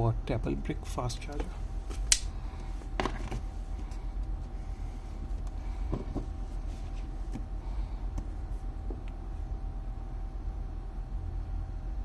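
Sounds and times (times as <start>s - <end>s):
faint hum: 0.0s - 12.0s
low background rumble: 0.0s - 12.0s.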